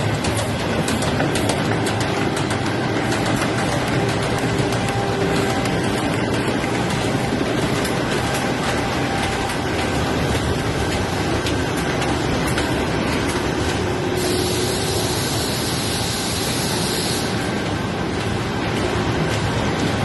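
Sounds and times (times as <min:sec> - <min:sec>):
printing machinery running: 0:00.0 - 0:20.0
high hiss: 0:14.2 - 0:17.4.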